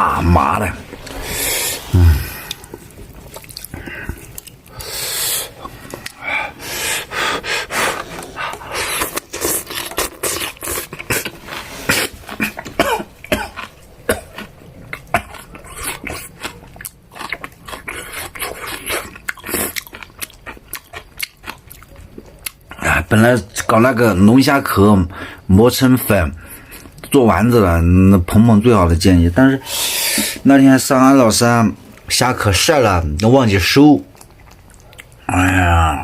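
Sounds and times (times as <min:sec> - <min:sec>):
chewing: 0:00.8 - 0:23.8, 0:26.4 - 0:27.2, 0:34.0 - 0:35.3
man coughing: 0:12.4 - 0:14.3.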